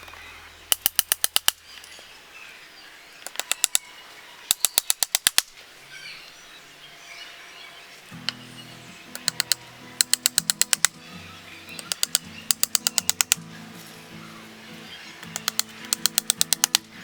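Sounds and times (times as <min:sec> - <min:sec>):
birds chirping faintly: 0:00.0 - 0:17.0
low steady music tones: 0:06.6 - 0:17.0
hand tool sharp strikes: 0:09.1 - 0:11.1, 0:11.7 - 0:14.0, 0:15.1 - 0:17.0.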